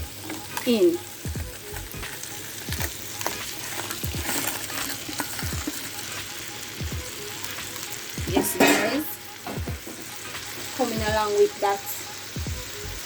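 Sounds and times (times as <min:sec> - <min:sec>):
crab sizzling in oil: 0:00.0 - 0:13.0
spoon stirring and knocking pot: 0:08.2 - 0:10.1.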